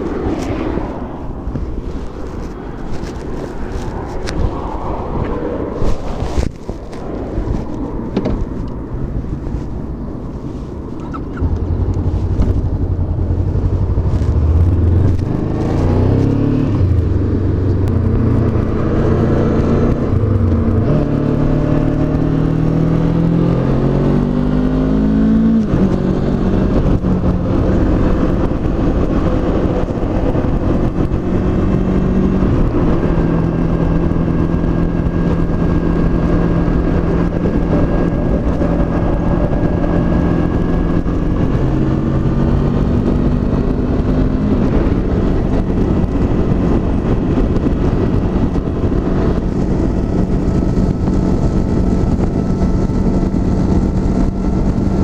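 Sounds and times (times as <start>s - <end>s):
wind rushing over microphone: 0.0s - 55.0s
motorcycle engine accelerating: 11.0s - 55.0s.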